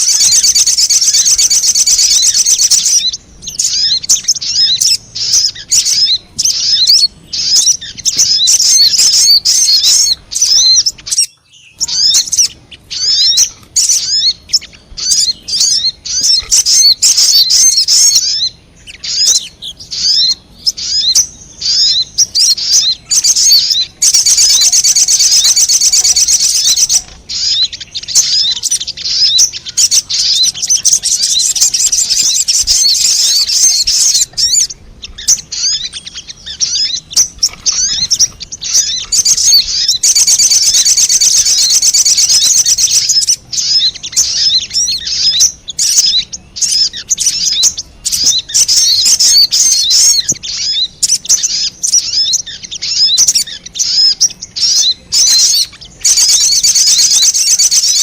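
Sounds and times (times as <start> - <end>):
bird chattering chirps: 0.0 - 58.0.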